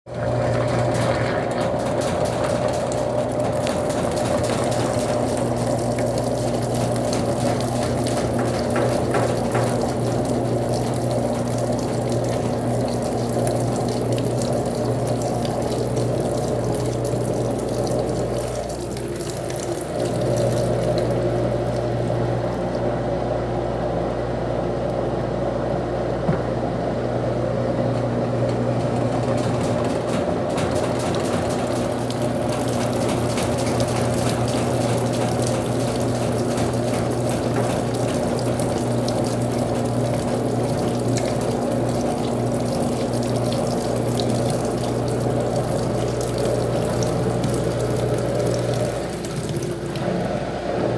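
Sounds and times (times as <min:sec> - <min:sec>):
washing machine water rushing: 0:00.1 - 0:50.9
electric hum: 0:02.6 - 0:28.4.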